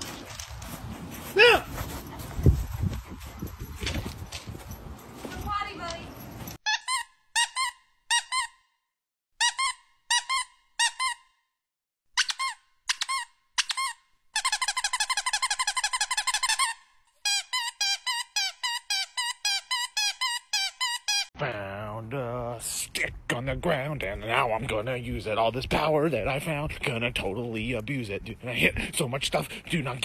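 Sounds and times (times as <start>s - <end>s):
squeaky toy squeaking: 6.6s - 8.6s, 9.4s - 11.3s, 12.2s - 21.3s.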